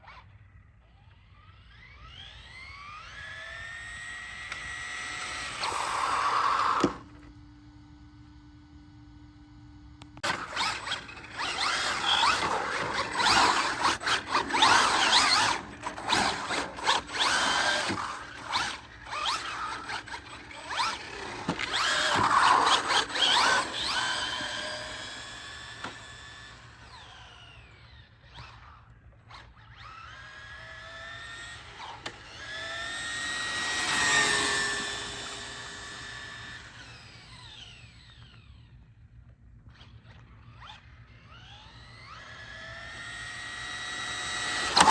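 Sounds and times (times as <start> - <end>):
electric motor whine: 0.9 - 38.8, 39.7 - 44.9
rough scrabbling of toy car: 5.4 - 7.2, 10.2 - 26.5, 31.6 - 36.7, 44.0 - 44.9.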